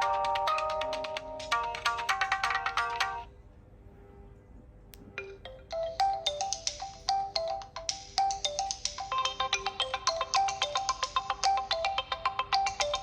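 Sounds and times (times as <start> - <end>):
phone ringtone melody: 0.0 - 3.3, 5.2 - 13.0.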